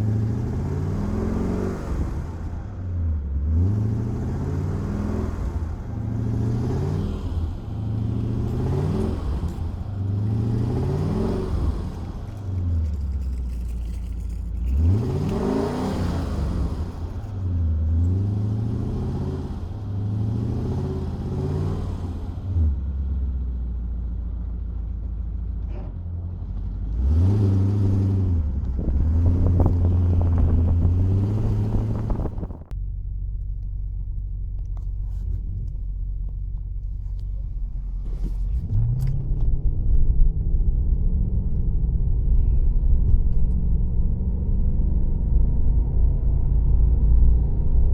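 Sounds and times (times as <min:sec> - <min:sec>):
car engine revving: 0:00.0 - 0:22.8, 0:26.9 - 0:32.7.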